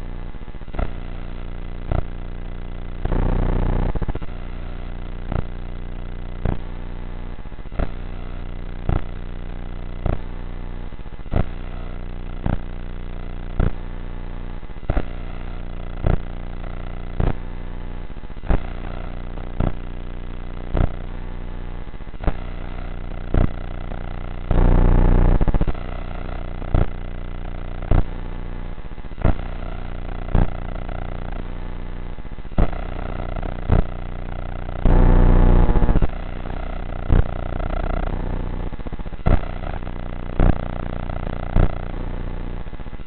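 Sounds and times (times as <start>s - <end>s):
static crackles: 0.0s - 43.0s
steady electrical buzz: 0.0s - 43.0s
bursts of noise: 32.5s - 43.0s.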